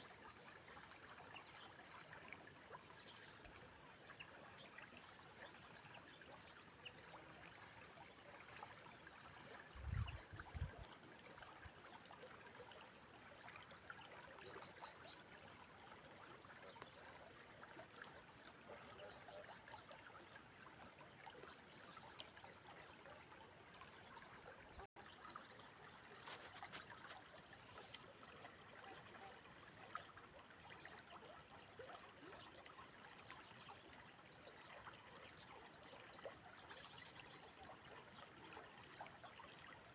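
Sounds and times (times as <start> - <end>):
river rushing and trickling: 19.8 - 35.8.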